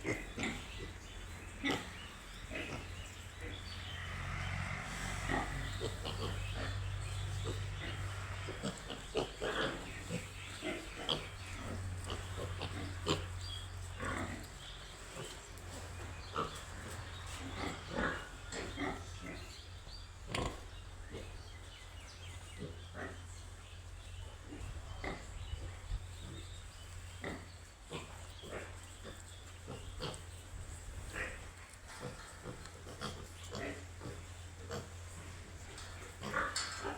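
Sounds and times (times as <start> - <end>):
piglet grunting: 1.6 - 14.6, 27.2 - 36.9.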